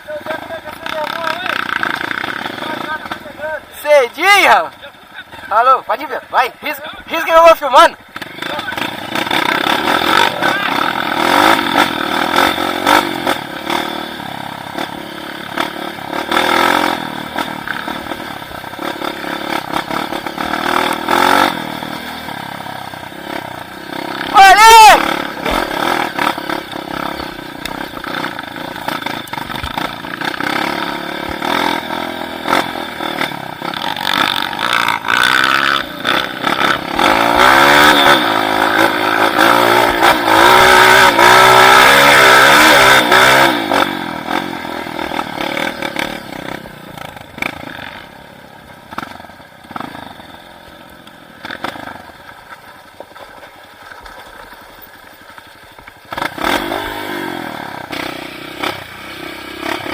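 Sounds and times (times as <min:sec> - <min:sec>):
motorcycle engine revving: 0:00.0 - 0:52.6, 0:54.8 - 0:59.9
clatter: 0:51.0 - 0:56.7.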